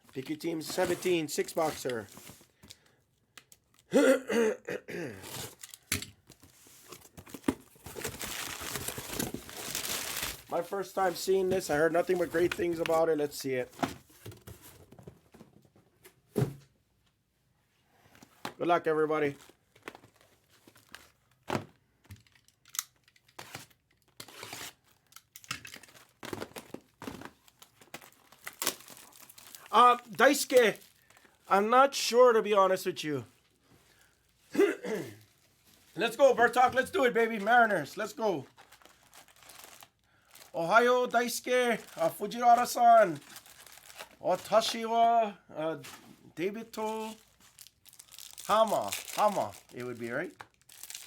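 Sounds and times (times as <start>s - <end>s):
plastic wrapping crinkling and tearing: 5.2s - 13.4s, 19.3s - 21.5s, 22.1s - 31.5s, 35.2s - 44.9s, 45.8s - 51.0s.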